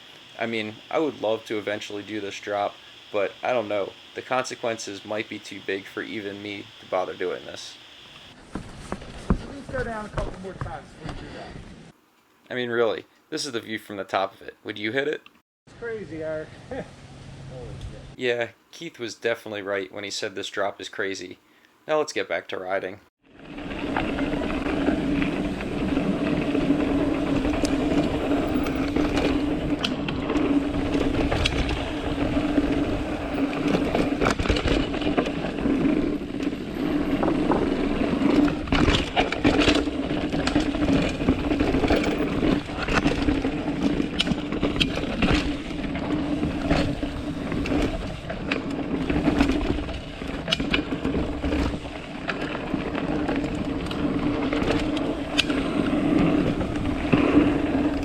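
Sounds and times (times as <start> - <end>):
bike tyres rolling over dirt: 0.0 - 11.9, 23.2 - 58.0
steady hum: 0.0 - 12.1
bike knocks and rattles: 8.4 - 11.2, 23.9 - 58.0.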